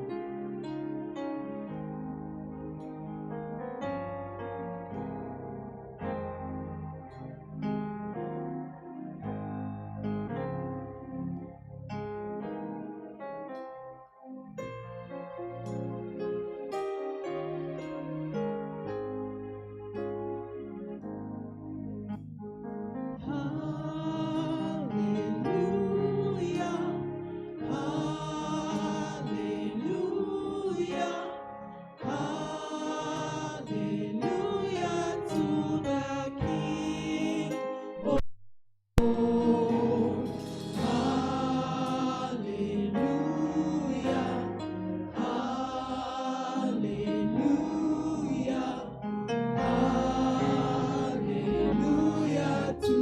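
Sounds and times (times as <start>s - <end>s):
gospel choir singing a hymn: 23.2s - 38.2s, 39.0s - 53.0s.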